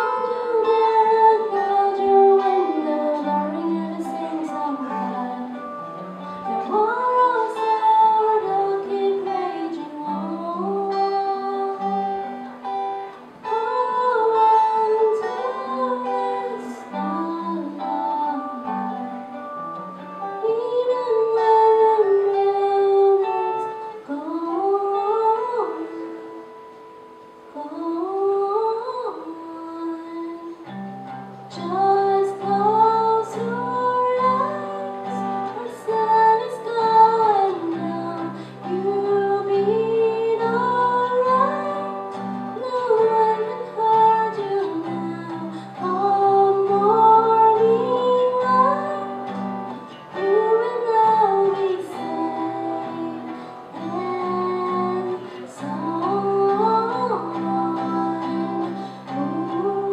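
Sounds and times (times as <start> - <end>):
fingerpicked acoustic guitar: 0.0 - 59.9
person singing slow song: 0.0 - 59.9.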